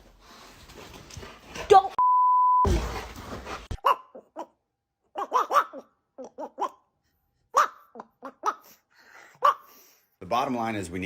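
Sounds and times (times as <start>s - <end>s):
dog barking: 3.8s - 4.5s.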